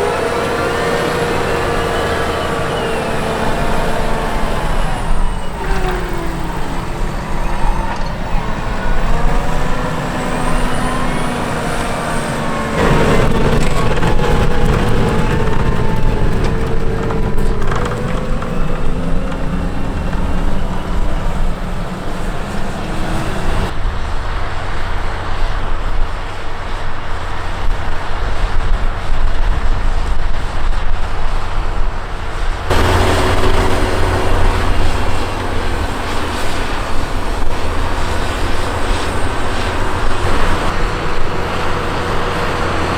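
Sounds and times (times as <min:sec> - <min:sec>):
whining tones: 0:00.0 - 0:23.7, 0:32.6 - 0:42.9
tractor engine under load: 0:00.0 - 0:23.8, 0:30.7 - 0:42.9.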